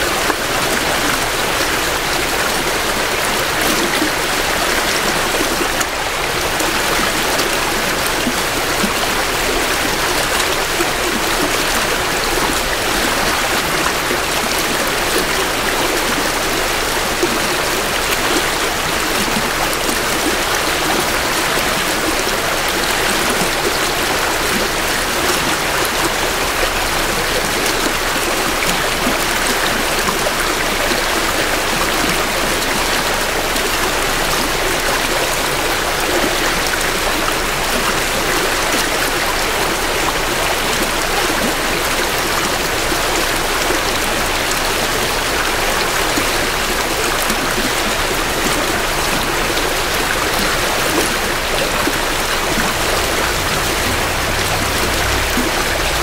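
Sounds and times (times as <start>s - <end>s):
creek water flowing over rocks: 0.0s - 56.0s.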